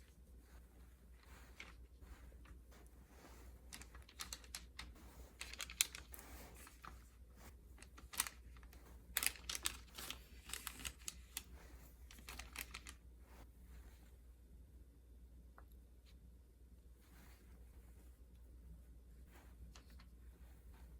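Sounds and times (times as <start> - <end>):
faint low hum: 0.0 - 20.9.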